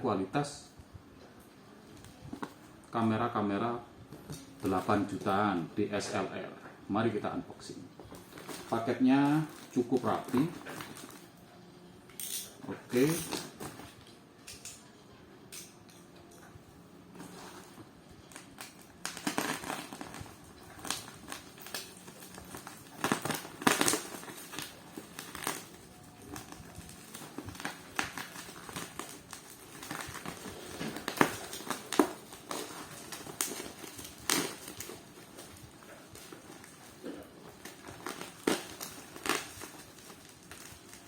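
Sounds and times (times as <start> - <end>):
packaging crinkling and rustling: 1.9 - 2.8, 7.6 - 11.4, 12.6 - 14.2, 17.1 - 41.0.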